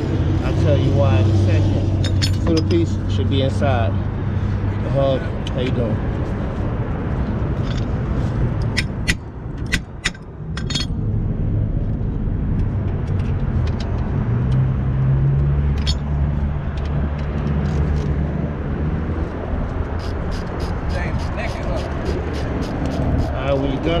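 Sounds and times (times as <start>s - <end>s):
sharp metallic clicks: 8.6s - 10.9s, 15.3s - 18.2s.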